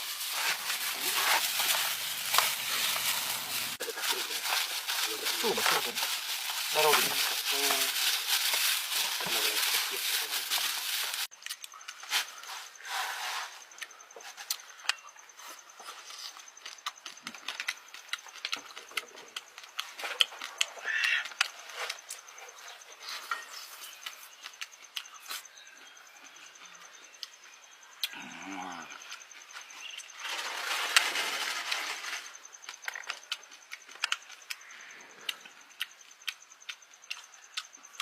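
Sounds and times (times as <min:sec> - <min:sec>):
dense crackling hiss: 0:00.0 - 0:13.8, 0:26.4 - 0:38.0
close-up chewing: 0:14.4 - 0:25.4.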